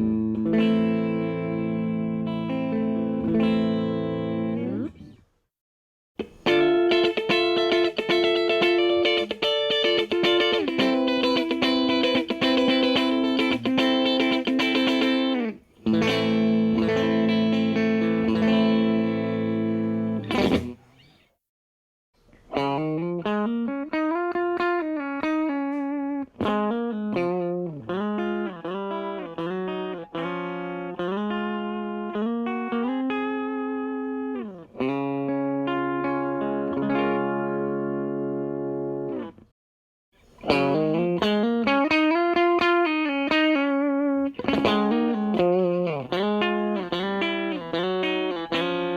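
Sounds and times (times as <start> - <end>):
electric guitar sustained chords: 0.0 - 4.9, 6.4 - 20.3
electric guitar lead lines: 0.0 - 5.2, 6.2 - 21.1, 22.5 - 39.5, 40.2 - 48.9.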